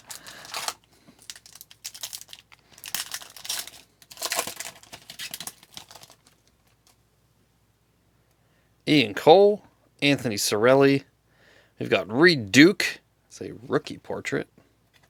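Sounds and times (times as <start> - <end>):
wrapper tearing and crinkling: 0.0 - 7.0.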